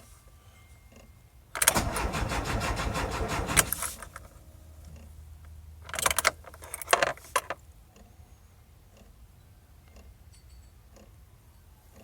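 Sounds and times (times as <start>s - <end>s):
starter cranking engine: 1.6s - 4.4s.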